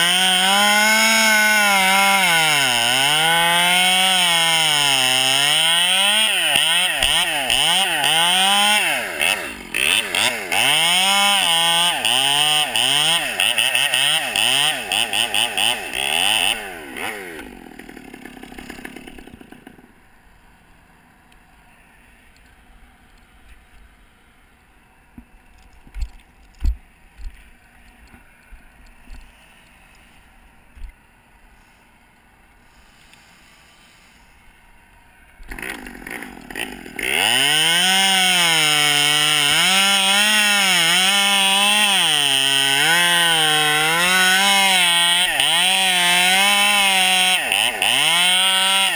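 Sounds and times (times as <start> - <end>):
chainsaw revving: 0.0 - 20.0, 35.5 - 48.9.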